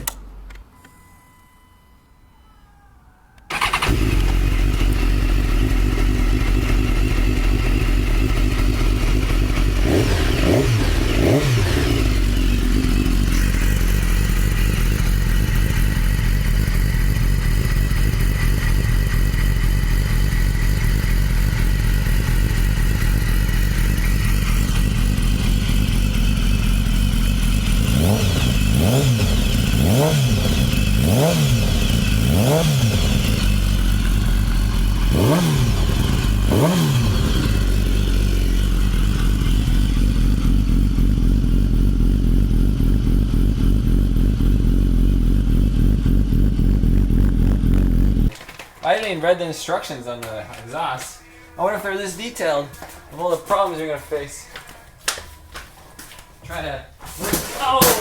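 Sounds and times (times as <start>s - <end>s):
motorcycle engine idling and revving: 3.5s - 48.4s.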